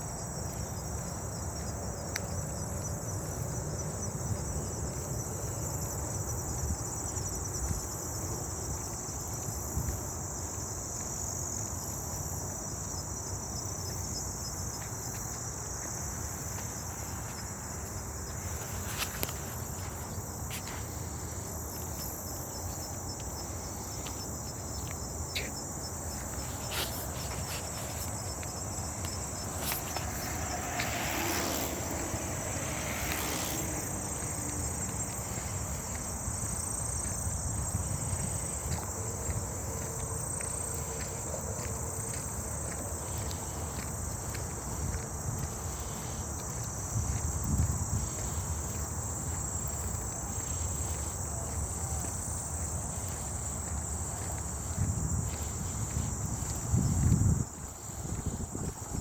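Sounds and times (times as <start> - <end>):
crickets trilling: 0.0 - 59.0.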